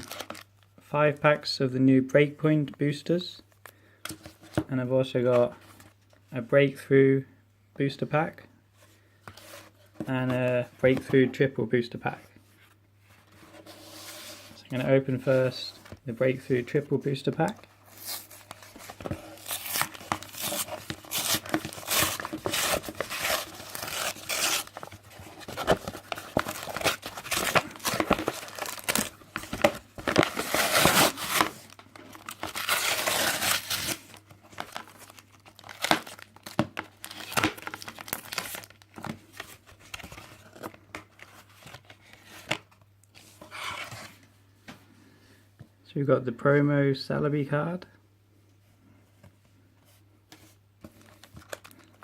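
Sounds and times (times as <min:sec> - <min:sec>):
plastic wrapper tearing and crinkling: 0:00.0 - 0:00.5, 0:18.0 - 0:39.1, 0:51.0 - 0:52.0.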